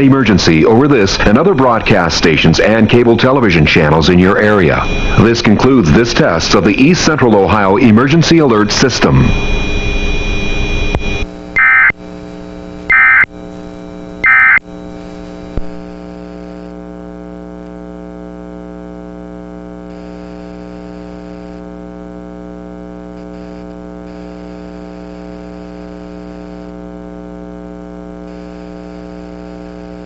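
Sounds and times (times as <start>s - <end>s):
electrical buzzing hum: 0.0s - 30.0s
warbling digital data tones: 0.5s - 11.9s, 12.9s - 13.3s, 14.2s - 14.6s.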